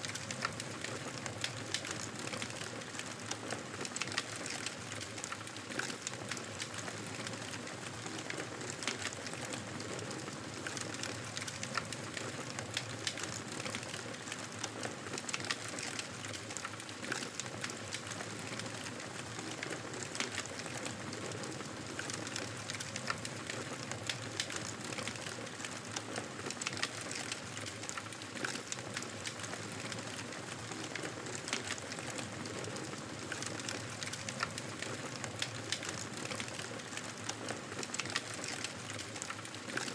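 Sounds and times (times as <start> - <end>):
campfire crackling: 35.4 - 39.3.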